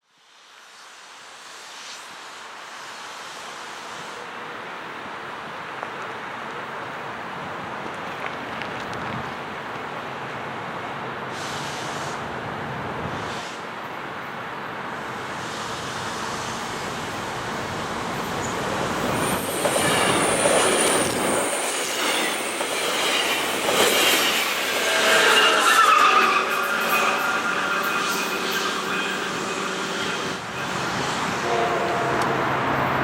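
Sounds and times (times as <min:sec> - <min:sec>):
train rolling along rails: 0:00.4 - 0:33.0
high wheel squeal: 0:18.2 - 0:33.0.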